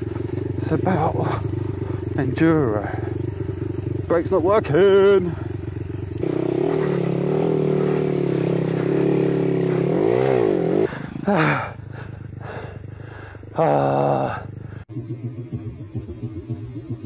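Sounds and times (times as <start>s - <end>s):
mini motorcycle engine revving: 0.0s - 12.7s, 13.6s - 17.0s.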